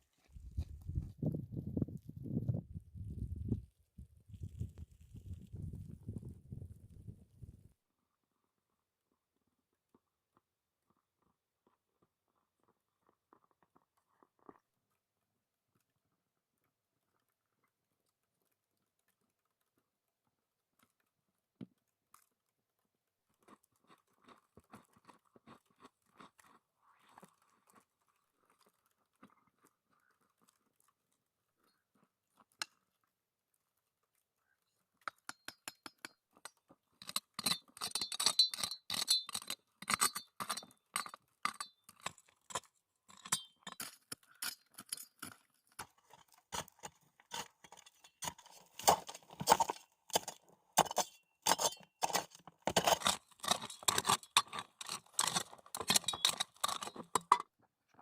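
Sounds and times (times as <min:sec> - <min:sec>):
crunching and crackling clicks: 0:36.1 - 0:57.3.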